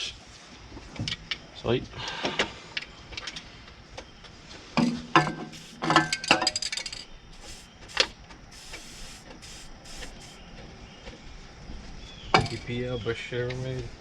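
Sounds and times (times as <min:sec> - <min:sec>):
metal tools clinking: 0:05.2 - 0:07.1.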